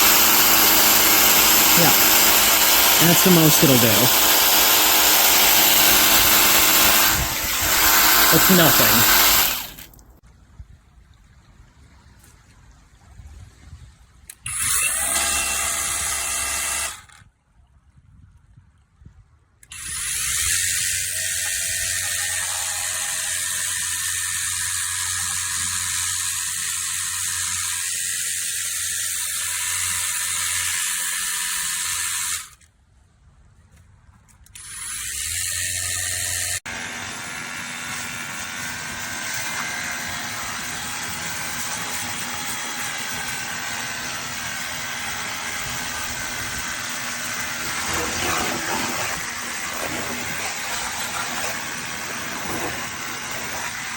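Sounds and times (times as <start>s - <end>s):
pressure washer pump humming: 0.0s - 10.2s, 35.2s - 53.9s
steady mechanical noise: 0.0s - 10.2s, 34.6s - 53.9s
water spray hiss: 5.0s - 10.0s.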